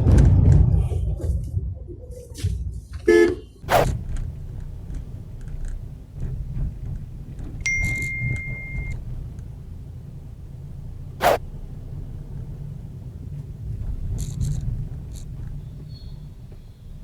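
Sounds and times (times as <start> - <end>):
car horn toot: 3.1 - 11.6, 13.8 - 17.0
car engine and road rumble: 3.1 - 17.0
sharp thump: 3.6 - 9.8, 10.5 - 11.5
high electronic beep: 7.7 - 9.0.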